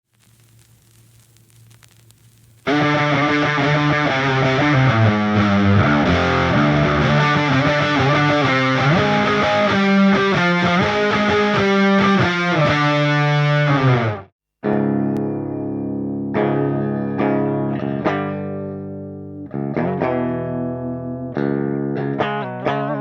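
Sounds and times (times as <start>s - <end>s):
fuzz-distorted electric guitar riff: 1.5s - 23.0s
guitar chord ringing: 2.7s - 23.0s.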